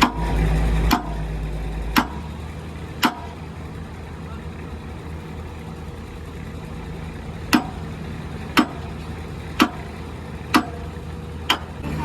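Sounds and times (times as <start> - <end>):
excavator diesel engine idling: 0.0 - 12.0
sharp knocks: 2.0 - 2.3, 3.0 - 3.4, 7.5 - 7.8, 10.5 - 10.8.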